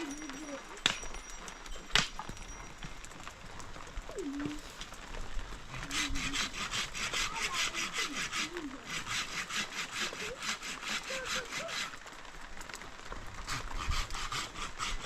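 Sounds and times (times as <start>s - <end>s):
fast rhythmic rasping strokes: 5.8s - 11.9s, 13.5s - 15.0s.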